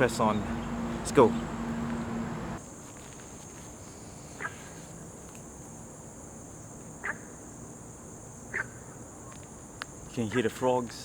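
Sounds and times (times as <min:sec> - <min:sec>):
frogs calling: 0:04.0 - 0:05.0, 0:06.8 - 0:10.8.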